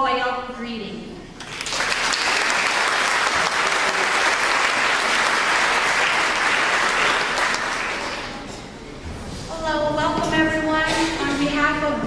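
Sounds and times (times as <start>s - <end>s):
audience applauding: 1.4s - 8.5s.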